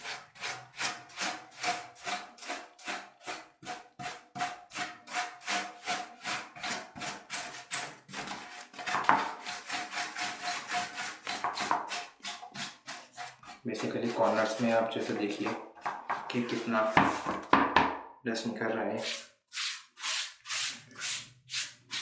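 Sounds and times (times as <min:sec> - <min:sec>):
brush scrubbing laptop cover: 0:09.5 - 0:15.7, 0:19.0 - 0:22.0.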